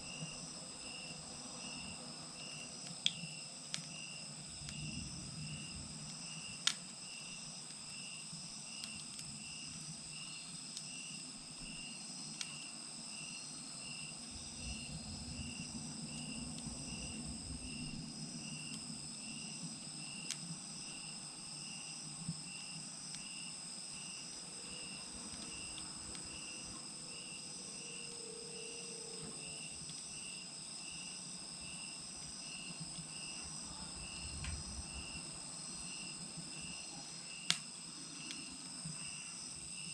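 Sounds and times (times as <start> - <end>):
crickets chirping: 0.0 - 39.9
wood fire popping: 2.8 - 12.6, 14.1 - 28.7, 32.1 - 39.0.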